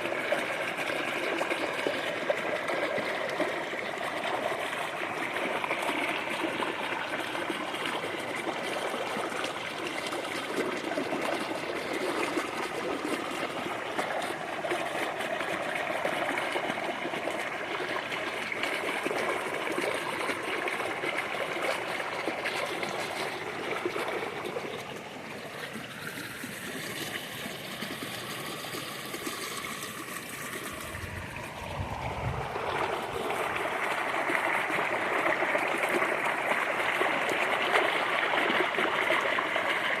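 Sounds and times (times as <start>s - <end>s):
creek trickling: 0.0s - 40.0s
low rumble: 30.7s - 34.0s.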